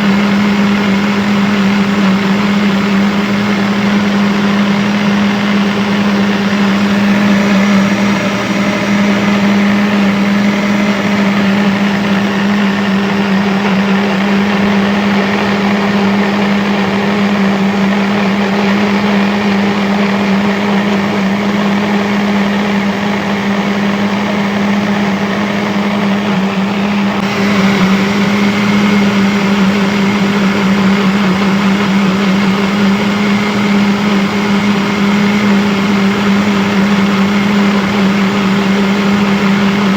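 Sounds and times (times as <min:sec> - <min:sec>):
blender running: 0:00.0 - 0:39.9.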